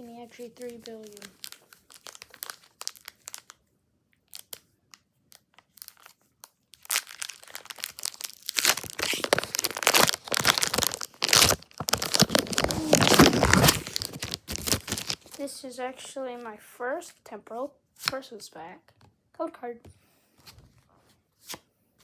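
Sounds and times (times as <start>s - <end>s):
foil wrapper crinkling and tearing: 0.3s - 3.6s, 4.3s - 4.6s, 5.3s - 15.4s.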